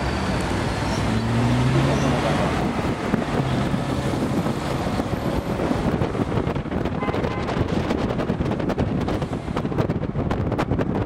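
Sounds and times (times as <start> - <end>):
vehicle rumble: 0.0 - 11.0
wind buffeting microphone: 0.3 - 11.0.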